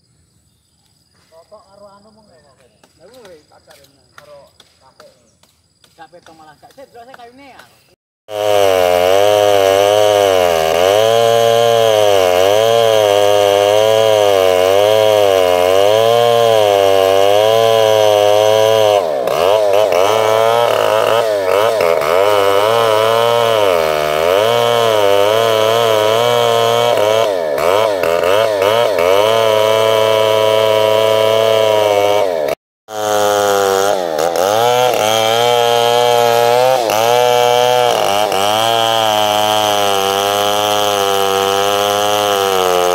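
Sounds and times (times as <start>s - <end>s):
chainsaw cutting into tree trunk: 8.3s - 42.9s.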